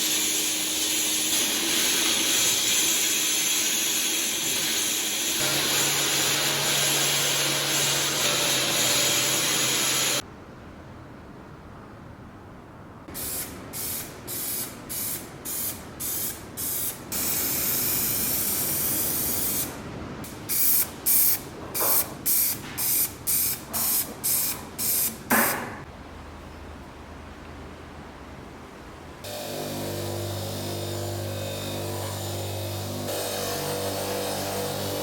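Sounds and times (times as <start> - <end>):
paint spraying in hissing bursts: 0.0 - 10.2, 13.1 - 25.7.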